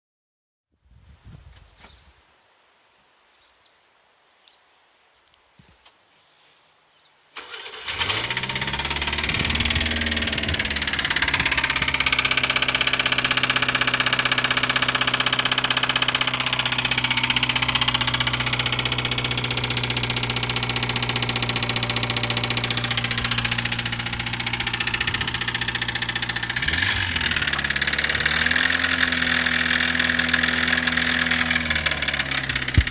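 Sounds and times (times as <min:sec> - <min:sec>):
engine idling with rattling: 0:07.4 - 0:32.9.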